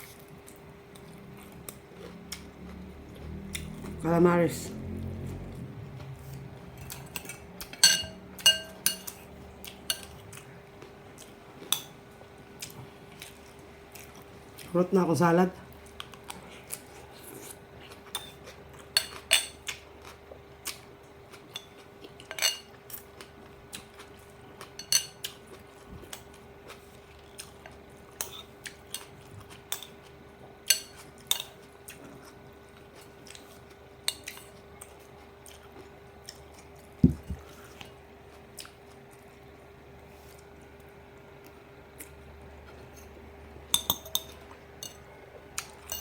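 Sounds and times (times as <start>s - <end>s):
faint hum: 0.0s - 46.0s
cutlery clinking on a plate: 6.9s - 9.2s, 24.8s - 25.2s.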